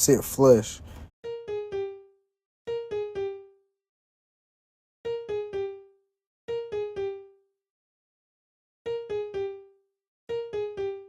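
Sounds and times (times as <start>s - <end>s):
electric piano melody: 1.2s - 3.7s, 5.0s - 7.5s, 8.8s - 11.0s.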